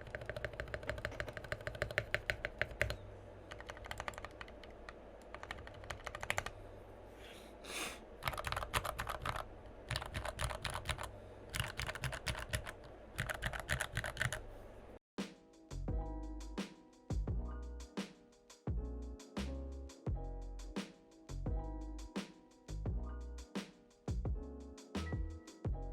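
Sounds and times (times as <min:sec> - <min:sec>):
fast mechanical keyboard typing: 0:00.0 - 0:06.5, 0:08.2 - 0:14.4.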